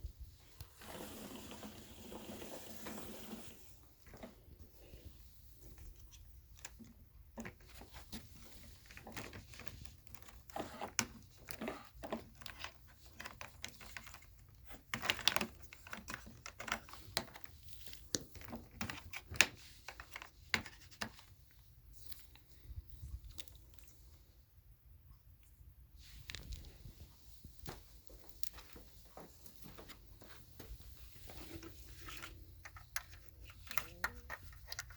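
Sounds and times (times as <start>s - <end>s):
plastic being handled: 0.0s - 24.4s, 26.0s - 34.9s.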